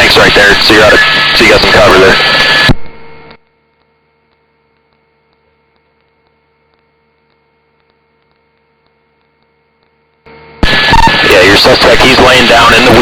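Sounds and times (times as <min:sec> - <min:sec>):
faint electrical hum: 0:00.0 - 0:13.0
soft ticks: 0:03.4 - 0:10.3.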